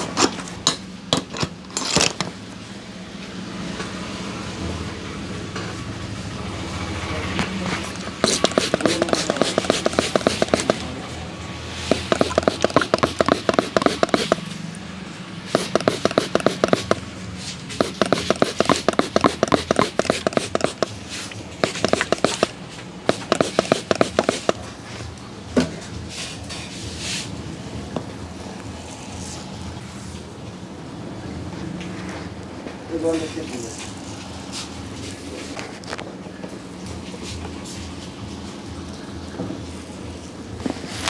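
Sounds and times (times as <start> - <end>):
hands slapping a head and body: 15.6 - 17.0.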